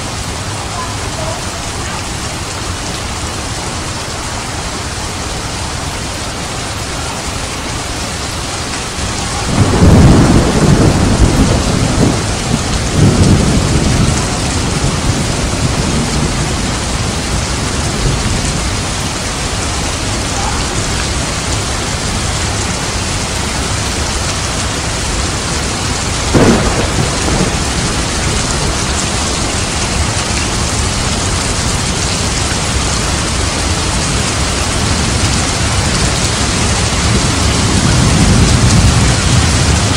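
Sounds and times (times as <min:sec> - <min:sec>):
heavy rain: 0:00.0 - 0:39.9
thunder rumbling: 0:08.2 - 0:39.9
sharp thunderclap: 0:09.3 - 0:18.6, 0:26.2 - 0:31.5, 0:36.2 - 0:39.9.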